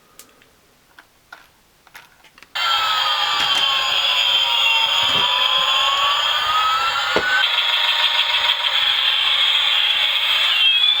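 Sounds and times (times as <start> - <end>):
toy plane electronic whine: 2.6 - 11.0
single knock: 7.1 - 7.4.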